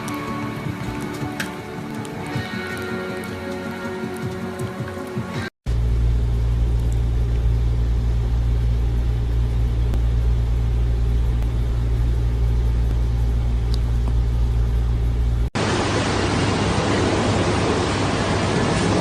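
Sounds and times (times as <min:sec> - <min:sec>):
loud low rumble: 0:05.7 - 0:19.0.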